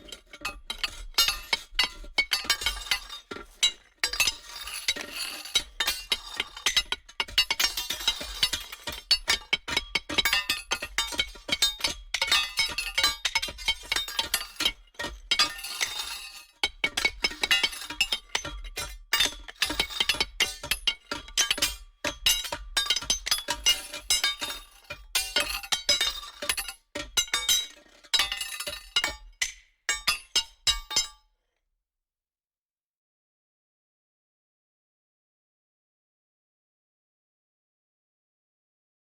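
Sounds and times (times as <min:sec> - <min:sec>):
small hard objects clinking: 0:00.4 - 0:30.2.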